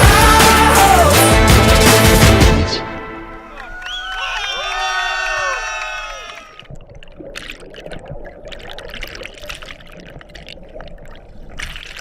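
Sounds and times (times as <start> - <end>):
river water splashing: 5.6 - 12.0.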